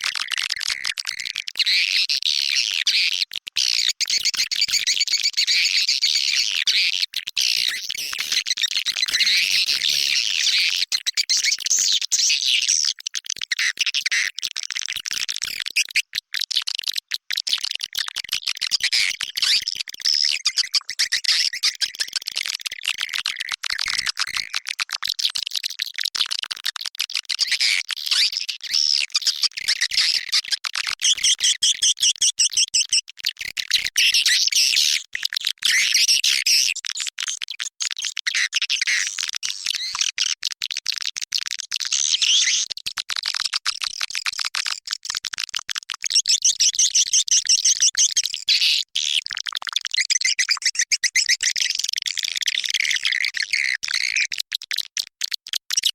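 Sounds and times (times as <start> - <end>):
swiftlets twittering: 7.4 - 11.1.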